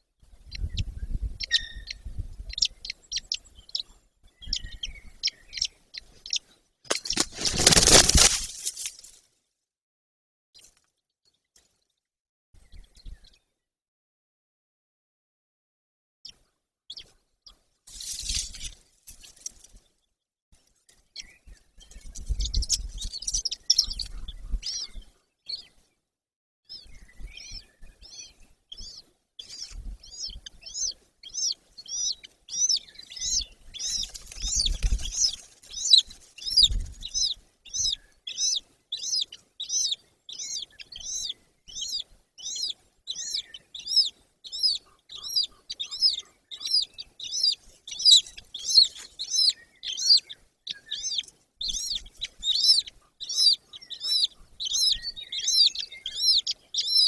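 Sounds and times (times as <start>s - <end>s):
eagle chicks cheeping: 0.3s - 8.3s, 21.2s - 25.8s, 26.7s - 57.0s.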